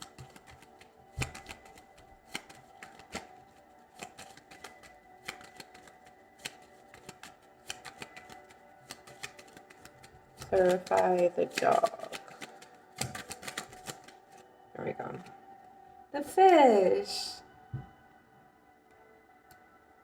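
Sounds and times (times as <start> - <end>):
cards being shuffled: 0.0 - 14.4
faint background music: 0.0 - 20.0.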